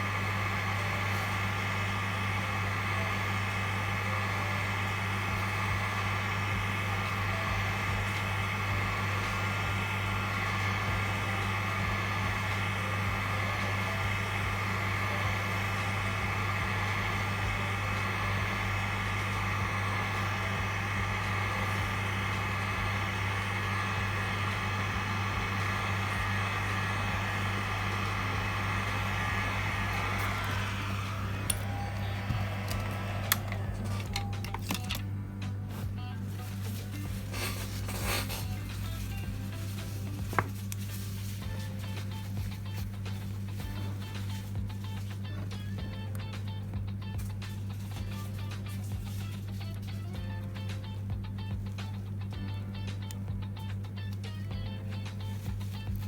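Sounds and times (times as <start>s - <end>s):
hot air gun blowing: 0.0s - 35.0s, 36.8s - 40.8s.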